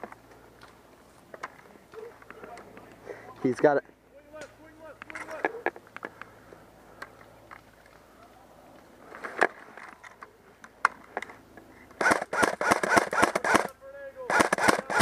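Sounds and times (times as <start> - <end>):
sharp clicks: 11.9 - 15.0
airsoft gun shots: 12.0 - 13.7, 14.3 - 15.0.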